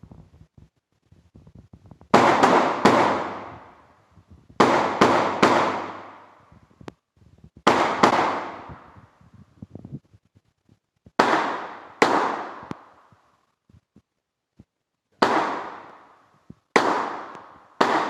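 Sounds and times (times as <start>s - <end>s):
gunshots with echoing decay: 2.1s - 4.0s, 4.6s - 6.5s, 7.6s - 9.2s, 11.2s - 13.1s, 15.2s - 18.0s.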